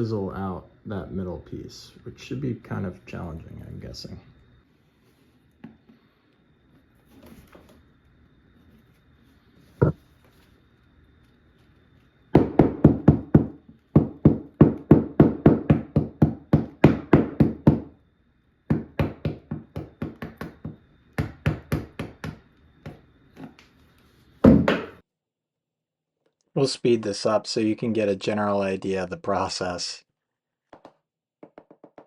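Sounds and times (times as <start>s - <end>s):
mallet striking wood chisel: 12.4s - 17.8s.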